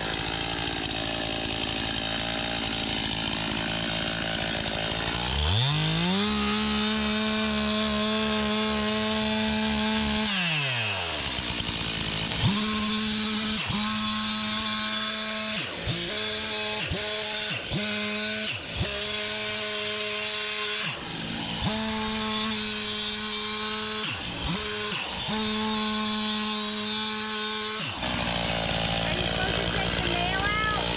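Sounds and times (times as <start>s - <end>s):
chainsaw cutting log: 0.0s - 30.9s
chainsaw revving: 0.0s - 30.9s.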